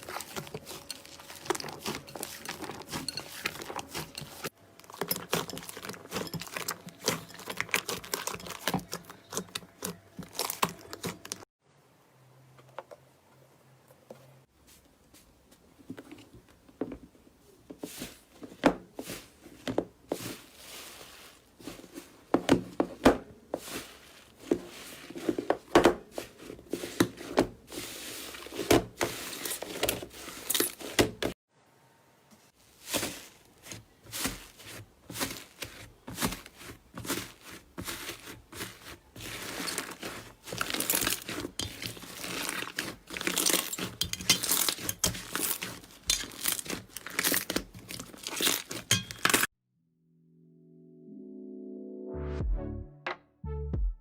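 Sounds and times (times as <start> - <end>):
slime popping and crackling: 39.4 - 49.4.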